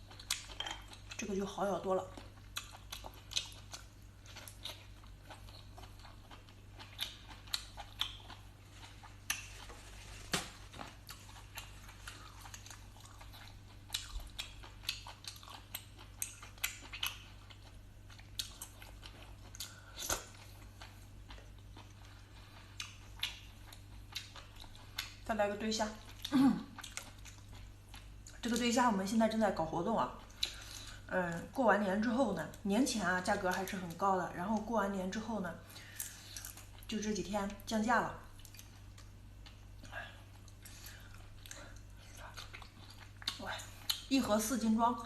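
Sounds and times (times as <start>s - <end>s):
wet chewing and mouth smacks: 0.0s - 1.3s, 2.1s - 10.1s, 10.7s - 25.3s, 26.0s - 28.4s, 30.1s - 31.4s, 38.3s - 44.1s.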